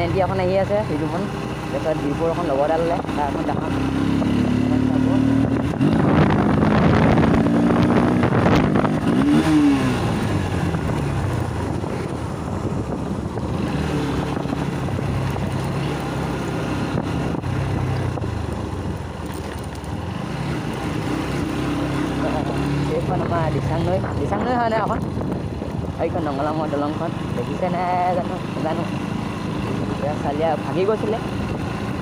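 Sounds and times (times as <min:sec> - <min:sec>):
motorcycle engine revving: 0:00.0 - 0:32.0
wind rush: 0:03.0 - 0:19.2, 0:19.9 - 0:28.1.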